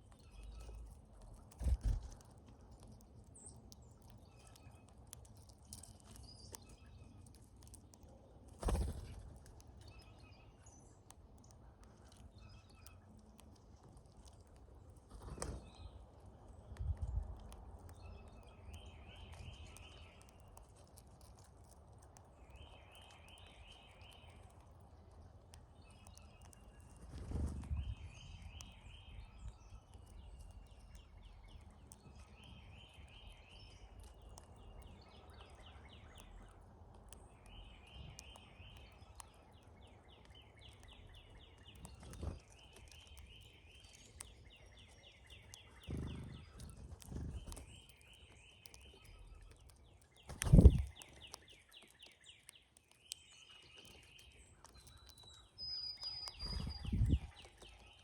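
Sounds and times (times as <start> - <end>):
birds rattling chatter: 43.9 - 49.6
thin high bird whistles: 55.2 - 57.5.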